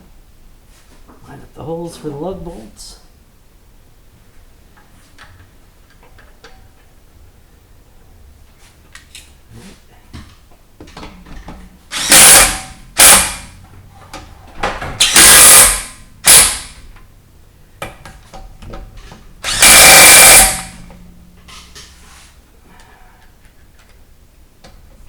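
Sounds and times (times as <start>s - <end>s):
impact wrench bursts: 11.9s - 13.6s, 15.0s - 16.8s, 19.4s - 20.9s.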